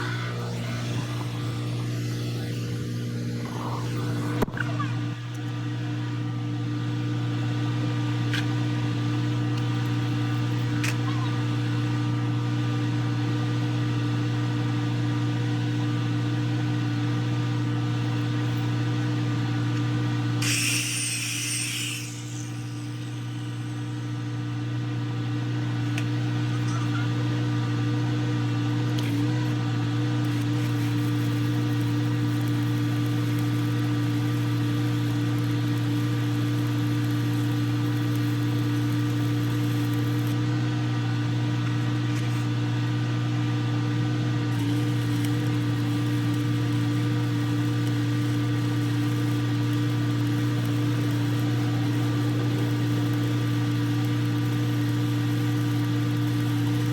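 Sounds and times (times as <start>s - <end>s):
welding equipment humming: 0.0s - 5.7s, 20.1s - 26.9s, 28.6s - 40.6s, 44.4s - 56.9s
burst of hiss: 20.4s - 24.4s.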